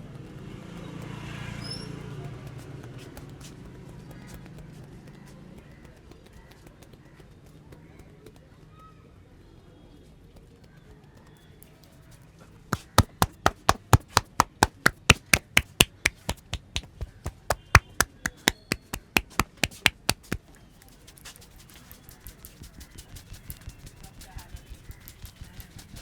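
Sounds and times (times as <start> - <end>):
sharp taps on the head: 12.8 - 20.9, 21.7 - 26.0.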